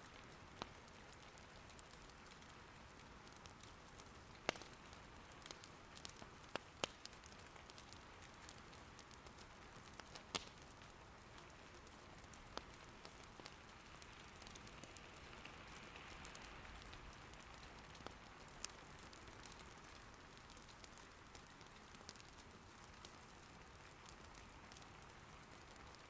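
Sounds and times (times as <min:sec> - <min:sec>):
firewood crackling and popping: 0:00.0 - 0:26.0
soft rain patter: 0:00.0 - 0:26.0.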